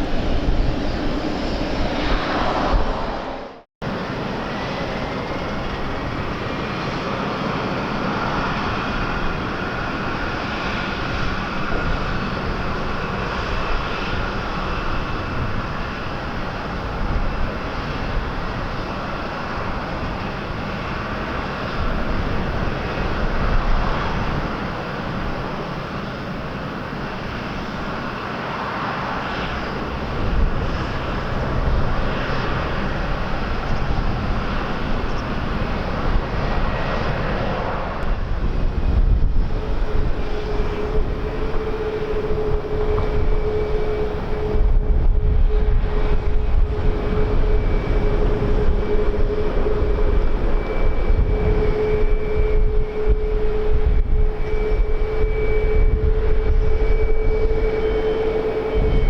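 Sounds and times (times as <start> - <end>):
airliner engines rumbling: 0.0 - 59.0
wind on microphone: 0.0 - 59.0.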